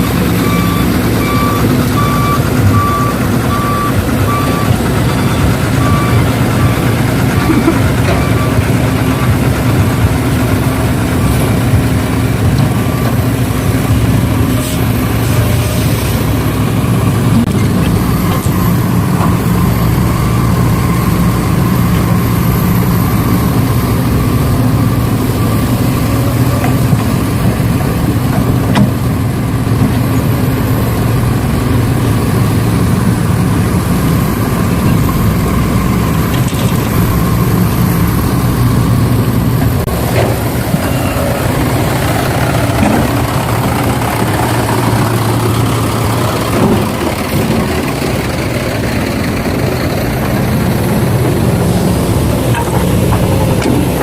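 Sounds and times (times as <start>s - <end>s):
heavy engine idling: 0.0s - 54.0s.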